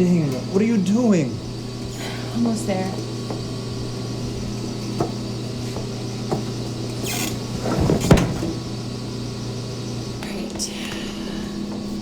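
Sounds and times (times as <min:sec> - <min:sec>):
steady low hum: 0:00.0 - 0:12.0
creaks: 0:07.0 - 0:08.6.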